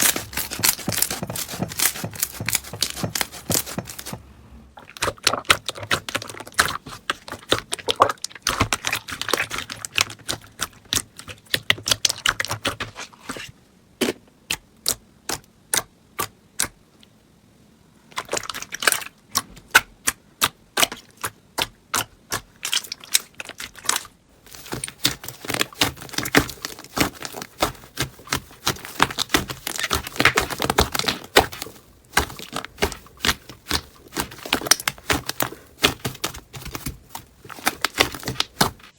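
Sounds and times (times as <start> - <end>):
slime squishing and popping: 18.2 - 38.9.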